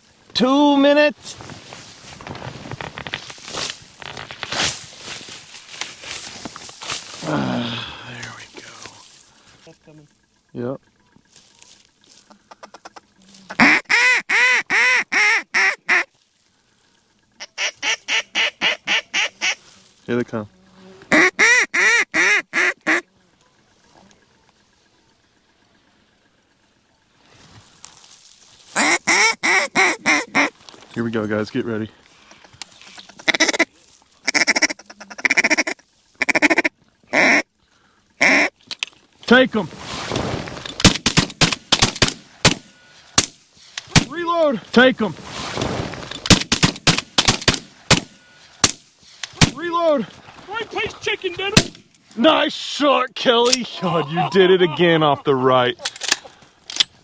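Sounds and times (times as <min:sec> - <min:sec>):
duck call quacks: 0:12.4 - 0:16.1, 0:17.4 - 0:19.6, 0:21.1 - 0:23.1, 0:28.8 - 0:30.5, 0:32.4 - 0:37.5, 0:38.2 - 0:38.6.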